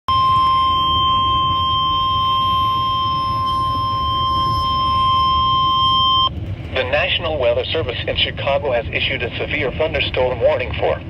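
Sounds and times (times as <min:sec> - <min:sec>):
steady electronic alert tone: 0:00.1 - 0:06.3.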